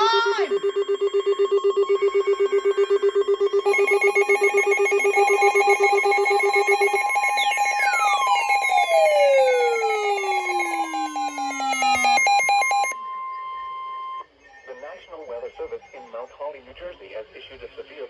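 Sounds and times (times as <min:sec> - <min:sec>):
higher pulsing tone: 0:00.0 - 0:12.9
rapidly pulsing alert beep: 0:00.0 - 0:13.0
steady electronic tone: 0:00.2 - 0:14.2.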